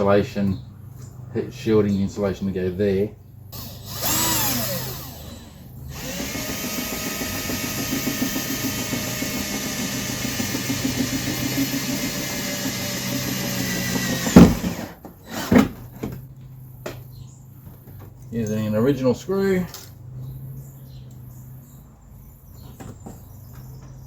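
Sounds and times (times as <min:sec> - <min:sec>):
power drill running: 0:03.6 - 0:15.7.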